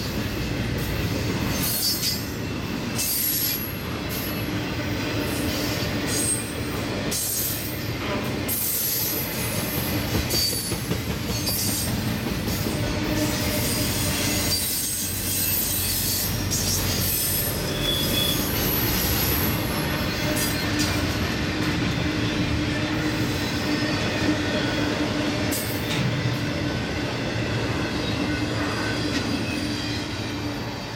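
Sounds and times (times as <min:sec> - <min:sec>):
freight train rumble: 0:00.0 - 0:30.9
wheels squealing on rails: 0:00.0 - 0:30.9.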